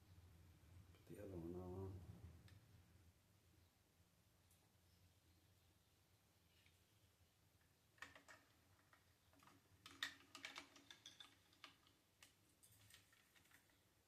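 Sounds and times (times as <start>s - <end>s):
small plastic parts clicking: 7.6s - 13.9s.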